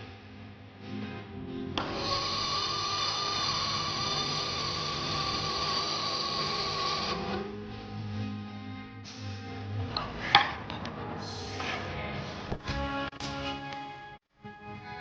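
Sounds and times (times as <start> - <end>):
background music: 0.0 - 15.0
power tool whining: 1.8 - 7.6.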